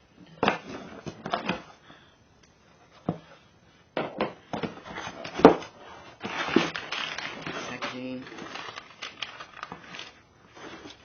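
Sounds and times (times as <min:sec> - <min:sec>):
cardboard rustling and scraping: 0:04.5 - 0:11.0.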